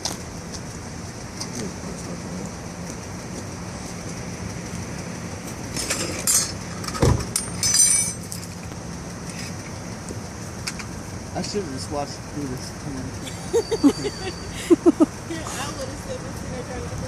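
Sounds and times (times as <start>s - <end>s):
metal tools clinking: 5.7s - 8.6s.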